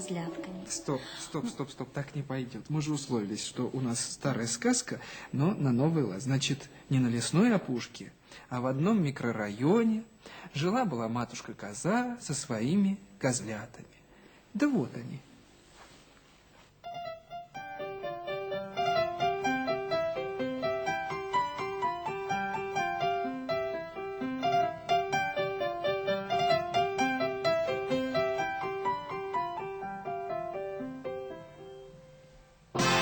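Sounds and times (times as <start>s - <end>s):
piano music: 0.0s - 1.7s, 16.8s - 33.0s.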